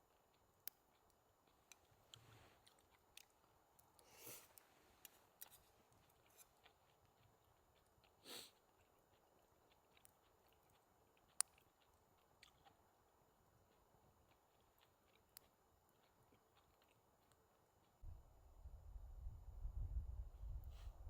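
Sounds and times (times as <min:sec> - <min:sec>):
soft rustle: 0:01.8 - 0:02.8.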